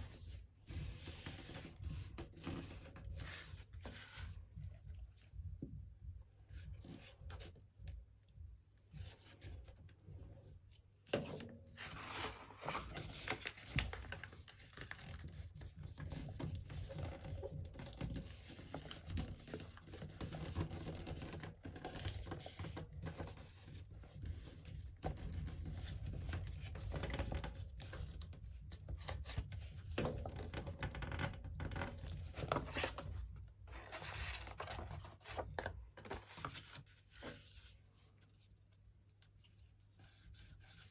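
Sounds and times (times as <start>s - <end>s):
paper and cardboard rustling: 0.1s - 4.4s, 11.7s - 28.2s, 31.8s - 38.5s.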